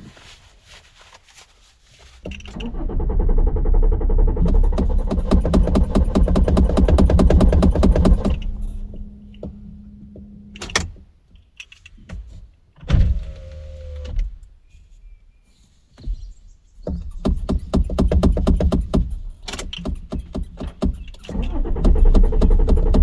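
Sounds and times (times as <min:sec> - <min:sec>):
car engine cranking: 0:02.3 - 0:11.0, 0:16.9 - 0:23.0
whirring with falling tone: 0:02.6 - 0:09.4.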